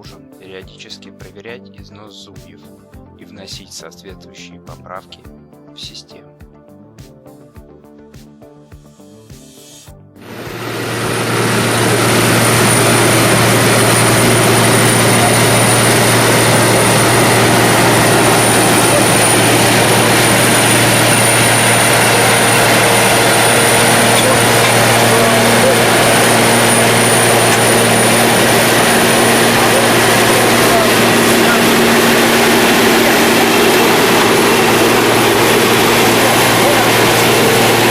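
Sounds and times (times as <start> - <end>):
road milling machine grinding: 10.2 - 37.9.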